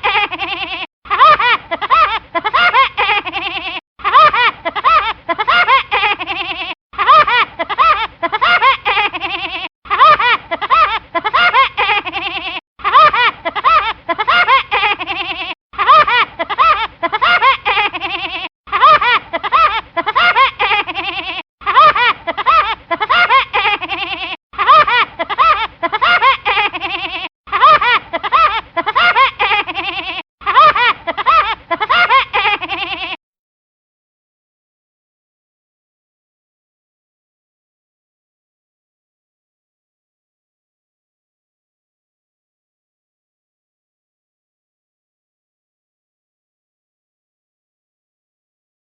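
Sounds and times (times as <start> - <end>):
cartoon laugh: 0.0 - 33.2.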